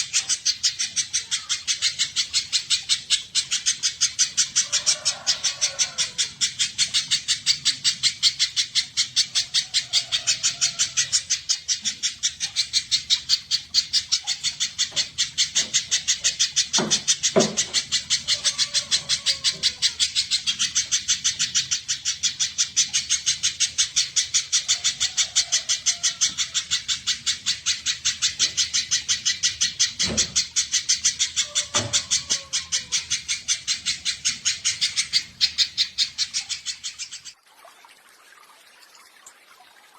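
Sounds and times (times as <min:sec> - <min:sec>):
dull knocks: 0:16.8 - 0:17.8.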